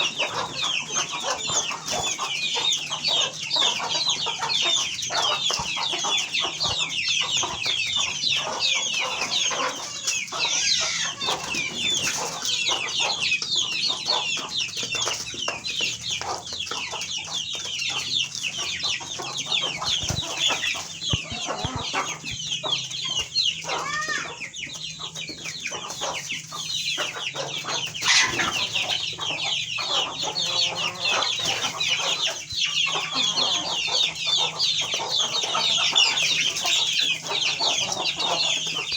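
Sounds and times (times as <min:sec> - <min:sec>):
chickens calling: 0:00.0 - 0:38.9.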